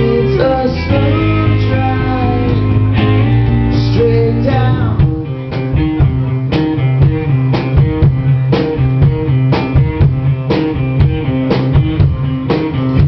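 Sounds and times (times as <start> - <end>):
rock band playing: 0.0 - 13.0.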